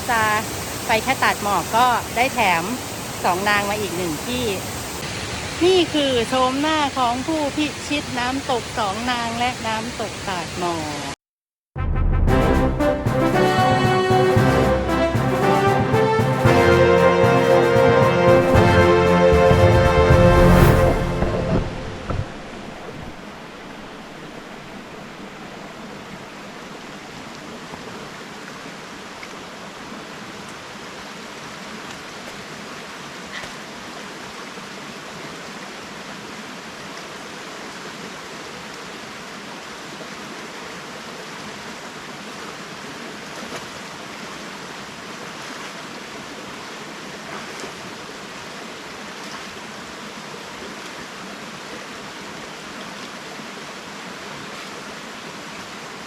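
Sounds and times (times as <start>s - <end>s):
waterfall rushing: 0.0s - 11.2s, 12.6s - 43.1s.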